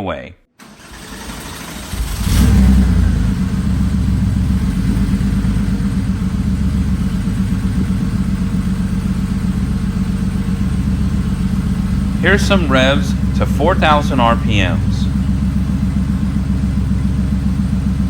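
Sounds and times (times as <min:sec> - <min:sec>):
car engine idling: 0:00.6 - 0:18.0.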